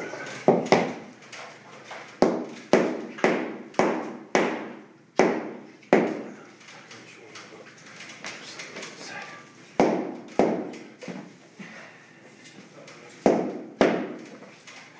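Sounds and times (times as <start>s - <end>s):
hammer knocking on floorboard: 0.5s - 1.0s, 2.2s - 6.3s, 9.8s - 11.2s.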